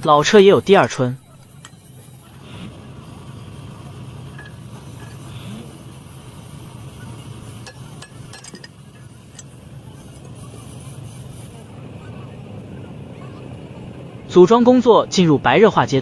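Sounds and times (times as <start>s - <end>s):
steady low hum: 0.0s - 16.0s
metallic clinks of tools: 7.6s - 9.6s.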